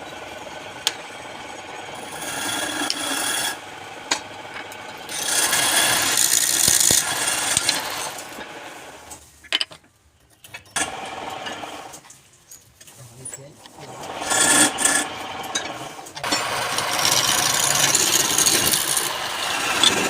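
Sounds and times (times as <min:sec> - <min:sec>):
wood rasping on a lathe: 0:00.0 - 0:09.1, 0:13.8 - 0:20.0.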